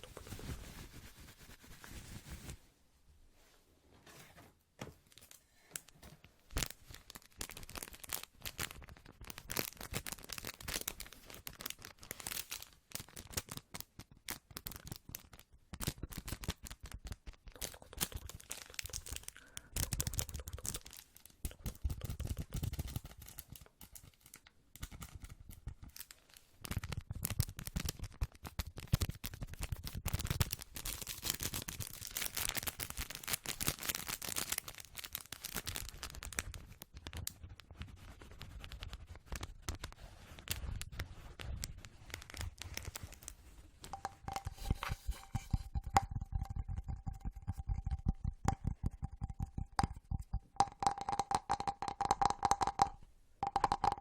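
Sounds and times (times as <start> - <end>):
rustling: 0.0 - 12.8, 37.4 - 50.4
tapping and clicking: 43.9 - 54.0.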